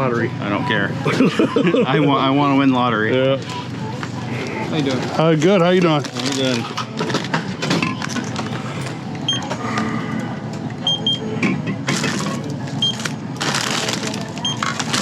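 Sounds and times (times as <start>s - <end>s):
packaging and bags rustling: 6.0s - 9.3s.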